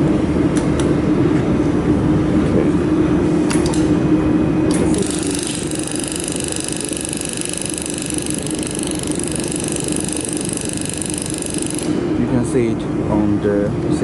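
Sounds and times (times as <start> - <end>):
machine and fans humming: 0.0 - 14.0
high whining tones: 4.2 - 12.8.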